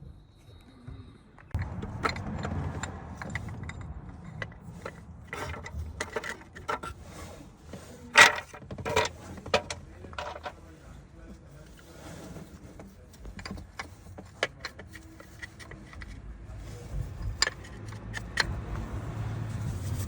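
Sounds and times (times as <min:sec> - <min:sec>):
low rumble: 0:01.4 - 0:06.2
metal tools clanking on engine parts: 0:01.4 - 0:19.3.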